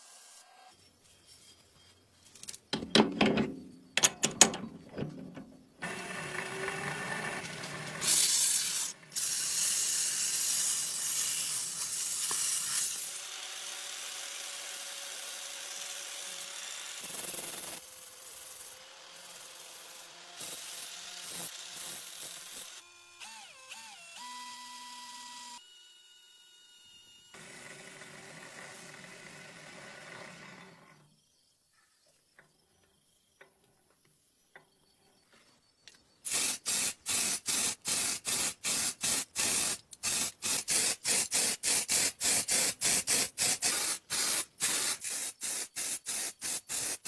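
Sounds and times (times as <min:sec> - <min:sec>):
sharp knocks and clatters: 0:02.4 - 0:05.6.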